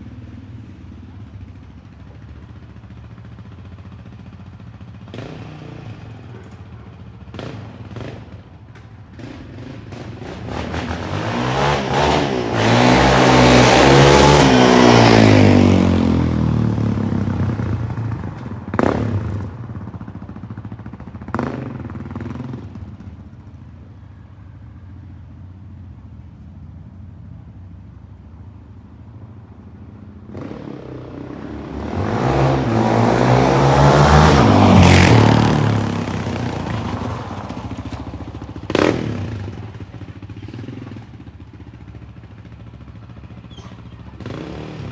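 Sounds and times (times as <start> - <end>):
atv engine revving: 3.9 - 23.2, 30.3 - 44.9.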